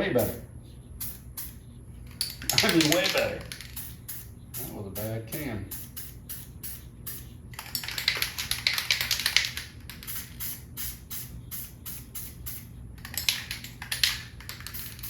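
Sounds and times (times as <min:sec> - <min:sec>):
aerosol spray can hissing: 0:05.7 - 0:07.4, 0:10.0 - 0:12.7.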